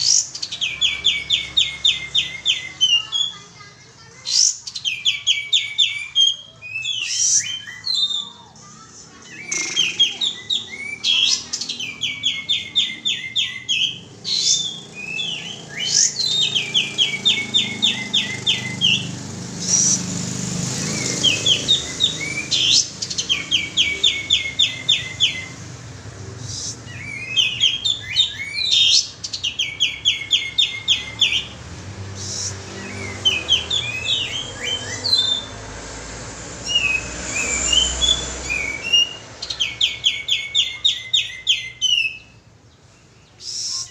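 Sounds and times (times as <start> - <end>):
bird singing high trills: 0.0 - 8.6, 9.2 - 35.8, 36.6 - 43.9
bird sweeping calls: 9.2 - 25.7, 26.4 - 35.8, 36.6 - 42.3.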